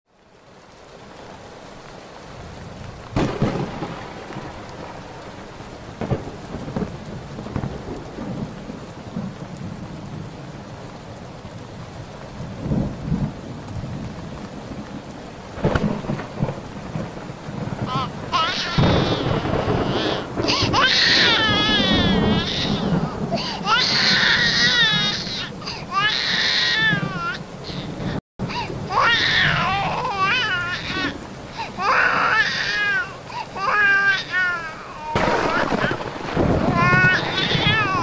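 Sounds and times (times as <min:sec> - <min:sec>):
steady rain: 0:00.1 - 0:38.0
thunder cracking and rumbling: 0:02.4 - 0:10.7, 0:11.8 - 0:38.0
baby crying: 0:17.8 - 0:38.0.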